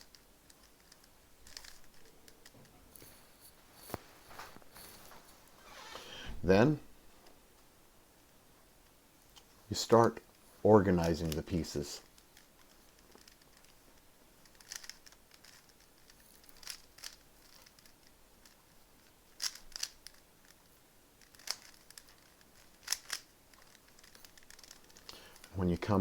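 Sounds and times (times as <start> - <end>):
puzzle cube twisting clicks: 0.0 - 2.5, 14.4 - 20.6, 21.2 - 25.5.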